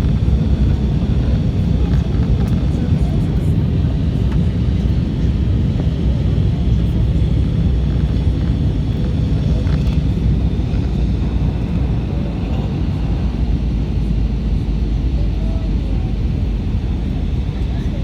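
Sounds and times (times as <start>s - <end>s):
airplane noise: 0.0s - 18.0s.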